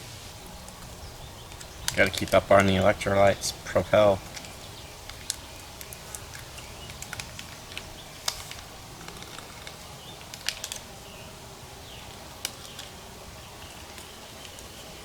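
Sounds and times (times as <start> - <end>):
packet and bottle crinkling: 0.7 - 10.9.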